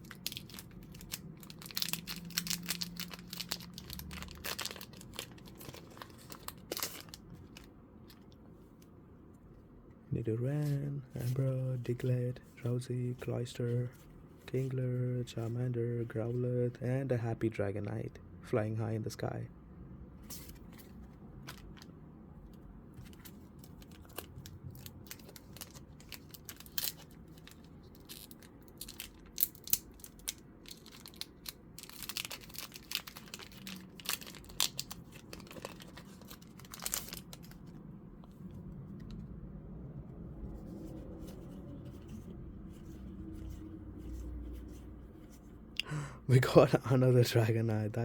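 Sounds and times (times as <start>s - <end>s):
foil pack crinkling and tearing: 0.0s - 7.7s, 23.2s - 37.6s
cards being handled: 0.0s - 8.8s, 20.2s - 21.9s, 22.9s - 37.8s.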